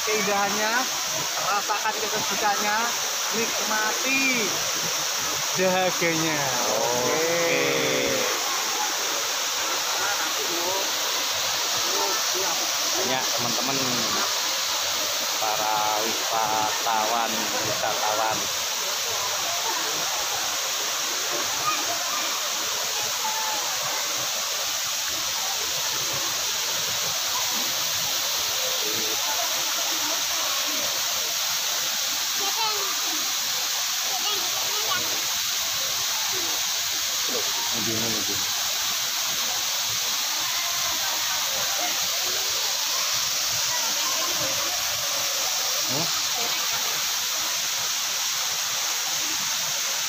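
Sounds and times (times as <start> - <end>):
waterfall rushing: 0.0 - 50.0
faint voices: 6.5 - 13.2.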